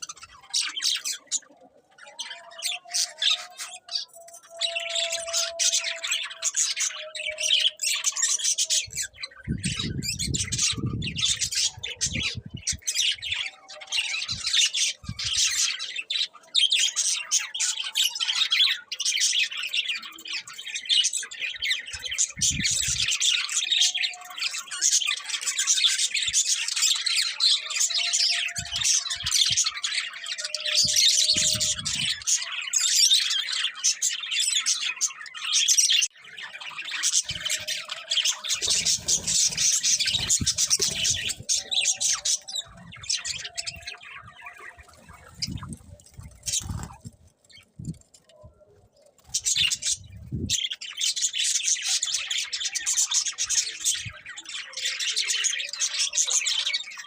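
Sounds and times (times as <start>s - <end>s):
budgerigars chattering: 0.0s - 1.5s, 31.3s - 47.1s.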